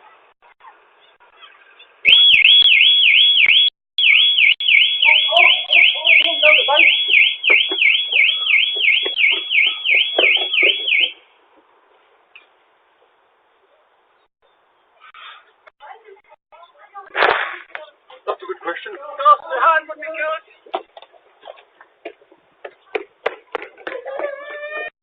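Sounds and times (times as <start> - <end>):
electronic alarm siren warbling: 2.1 - 11.2.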